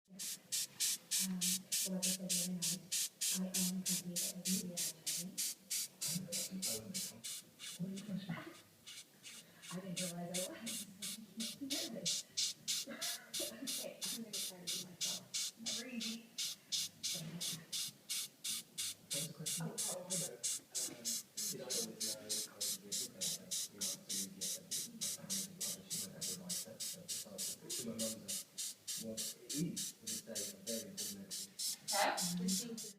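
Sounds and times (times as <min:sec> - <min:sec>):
beetle rhythmic rasping hiss: 0:00.2 - 0:08.1, 0:08.9 - 0:32.9
voices murmuring: 0:19.1 - 0:28.4.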